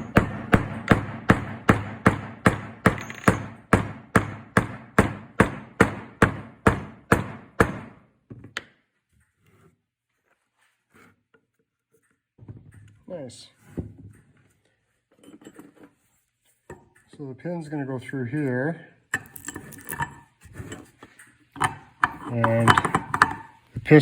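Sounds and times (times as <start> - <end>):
hammer blows ringing: 0.0 - 7.9.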